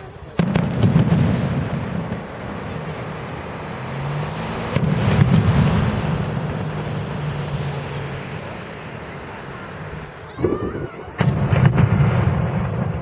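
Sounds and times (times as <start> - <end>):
fireworks bursting: 0.3 - 3.7, 10.4 - 13.0.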